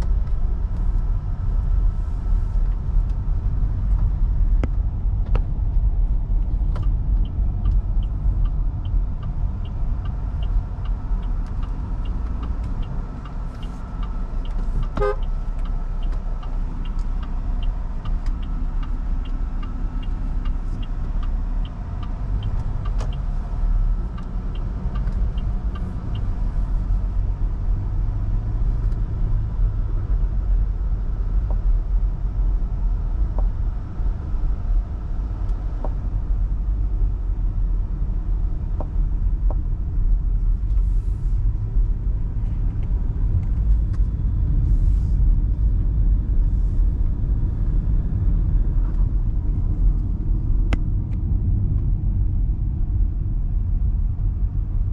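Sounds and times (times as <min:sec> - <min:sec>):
road and engine rumble: 0:00.0 - 0:54.9
car horn toot: 0:14.9 - 0:15.3.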